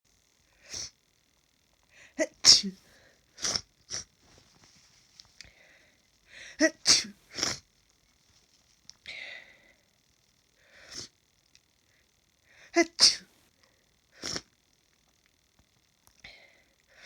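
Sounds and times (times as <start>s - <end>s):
person sneezing: 2.2s - 4.1s, 6.4s - 7.6s, 12.8s - 13.3s.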